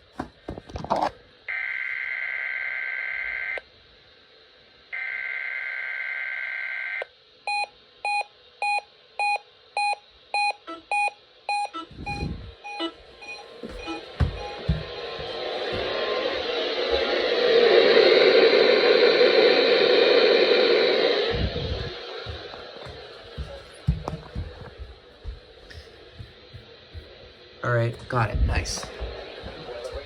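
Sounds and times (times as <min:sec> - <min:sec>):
electronic beeping: 0:08.7 - 0:15.1
low thumps: 0:11.9 - 0:17.2, 0:21.3 - 0:27.2.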